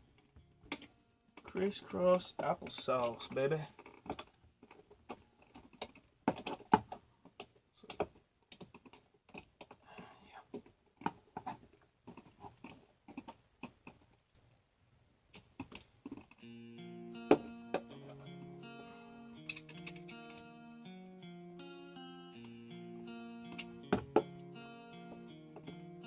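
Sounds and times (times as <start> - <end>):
screwdriver clicking on outlet: 19.4 - 20.4.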